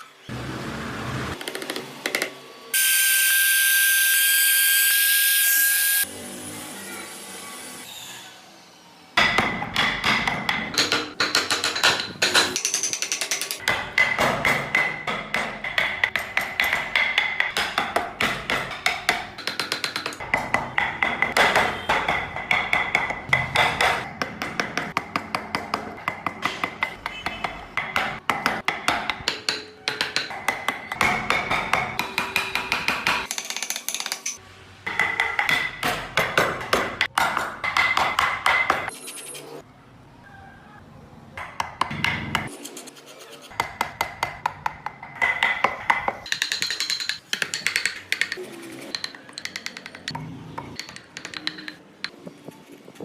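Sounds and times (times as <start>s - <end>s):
hammer tapping chisel into wood: 43.6s - 48.4s, 49.0s - 51.8s.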